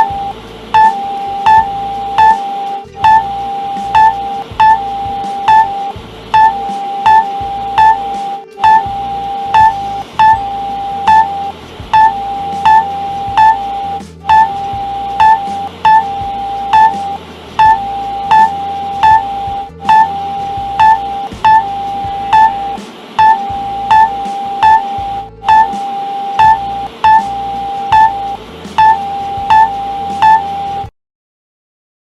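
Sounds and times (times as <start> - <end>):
music: 0.0 - 30.9
short loud beeps: 0.0 - 30.9
steady electronic tone: 0.0 - 30.9.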